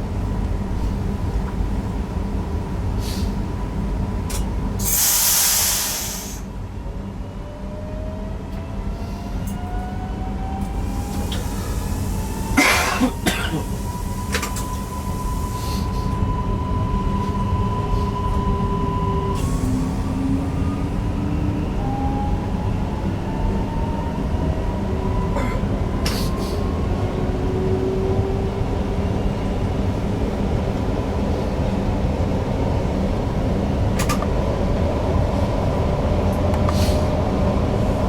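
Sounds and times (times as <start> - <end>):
short hiss: 4.8 - 6.4
wheel and rail rumble: 6.4 - 38.0.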